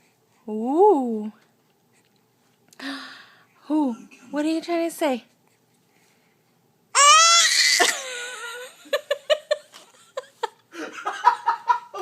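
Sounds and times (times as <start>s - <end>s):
baby laughing: 7.0s - 8.8s.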